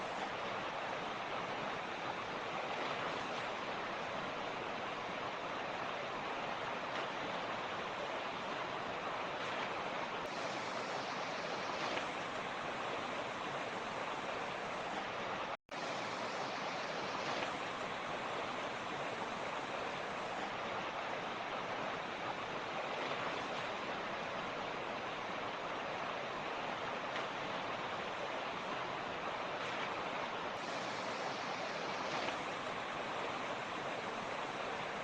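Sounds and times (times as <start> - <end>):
creek water rushing over rocks: 0.0 - 35.0.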